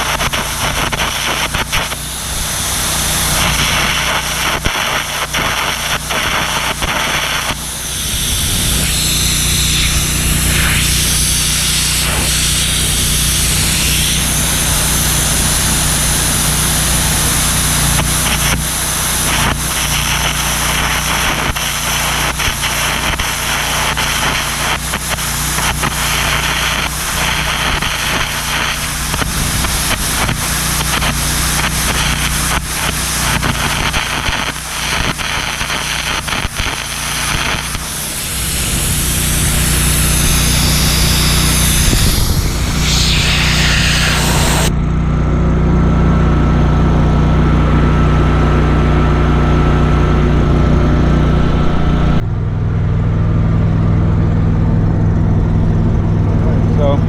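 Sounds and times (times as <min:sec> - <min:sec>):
electric arc crackling and hissing: 0:00.0 - 0:44.7
low engine hum: 0:37.7 - 0:57.0.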